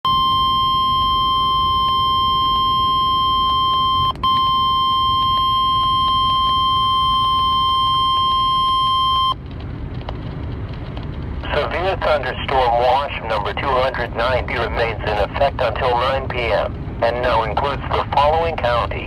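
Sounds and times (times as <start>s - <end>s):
steady alarm beep: 0.1s - 9.4s
low rumble: 0.1s - 19.0s.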